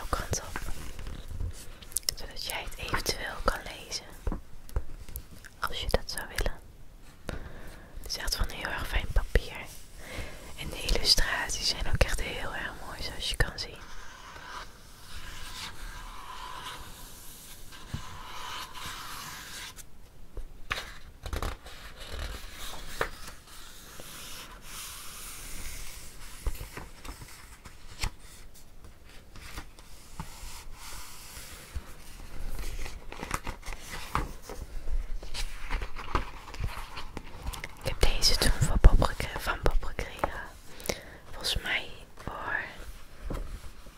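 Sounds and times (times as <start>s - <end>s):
rustling and scraping: 0.0s - 2.1s, 20.7s - 40.5s.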